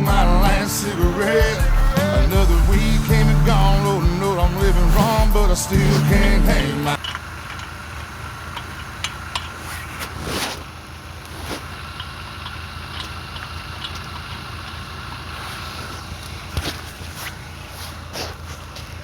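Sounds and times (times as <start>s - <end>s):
vehicle engine idling: 0.0s - 19.0s
brief whoosh: 4.8s - 7.0s.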